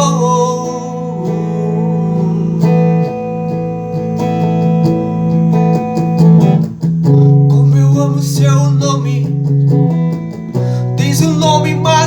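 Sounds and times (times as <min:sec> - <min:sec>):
person singing hymn: 0:00.0 - 0:06.1
acoustic guitar strumming chords: 0:00.0 - 0:12.0.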